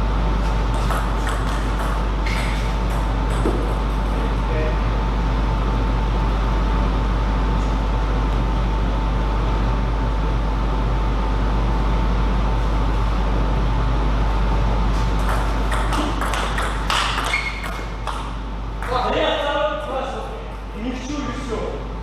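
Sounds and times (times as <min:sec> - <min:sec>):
table tennis ball strikes: 0:00.7 - 0:03.9, 0:15.2 - 0:19.1.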